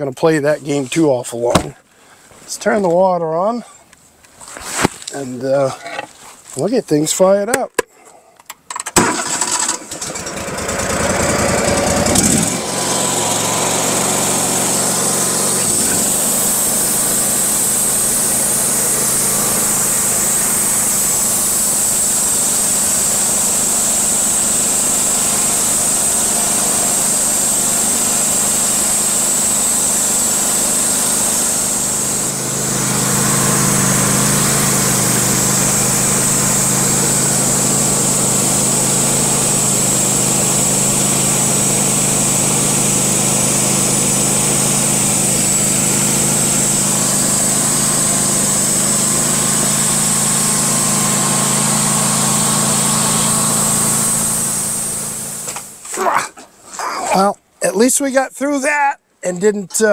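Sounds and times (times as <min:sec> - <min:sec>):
sawmill engine running with whine: 0:09.0 - 0:55.9.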